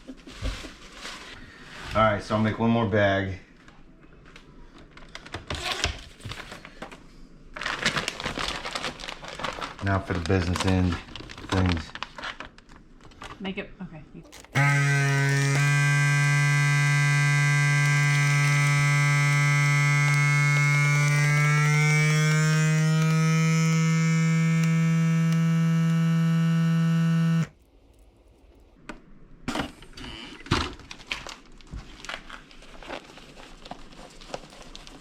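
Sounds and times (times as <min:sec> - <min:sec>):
plastic bag rustling: 0:00.0 - 0:01.9, 0:07.5 - 0:13.5, 0:14.2 - 0:14.6, 0:30.7 - 0:35.0
vacuum sealer pump humming: 0:14.3 - 0:27.5.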